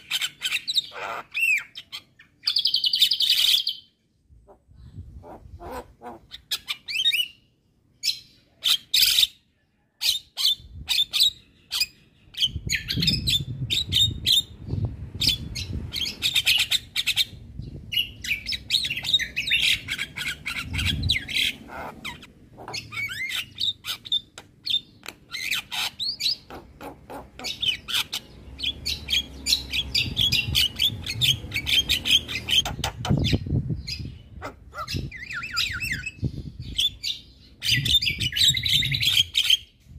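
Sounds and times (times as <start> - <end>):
bird singing chattering notes: 10.1 - 39.8.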